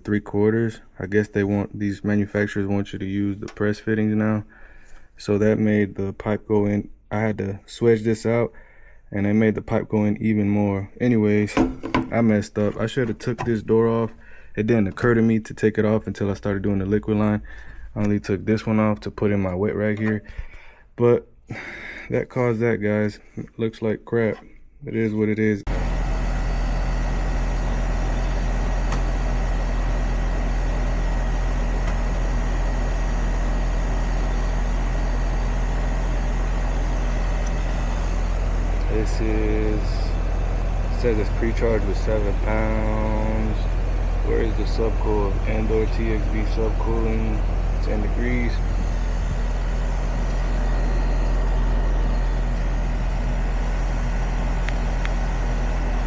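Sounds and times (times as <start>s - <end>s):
heat pump humming: 9.8s - 20.8s, 25.7s - 56.0s.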